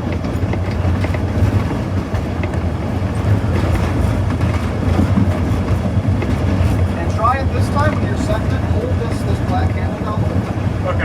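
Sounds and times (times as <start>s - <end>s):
diesel engine droning: 7.0s - 11.0s.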